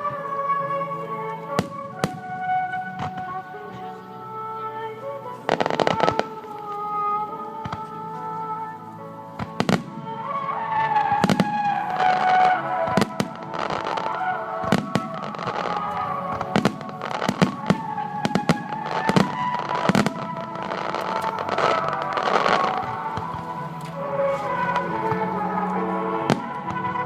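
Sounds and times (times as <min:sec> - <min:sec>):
music over loudspeakers: 0:00.0 - 0:27.0
fireworks bursting: 0:01.4 - 0:03.9, 0:05.0 - 0:08.3, 0:09.3 - 0:27.0.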